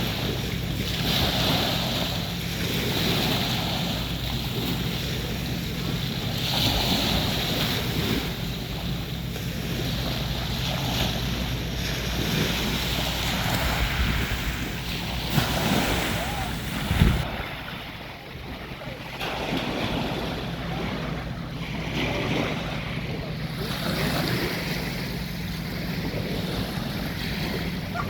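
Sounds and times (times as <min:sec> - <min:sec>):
steady low hum: 0:00.0 - 0:28.0
waves washing onto beach: 0:00.0 - 0:28.0
wind buffeting microphone: 0:00.0 - 0:28.0.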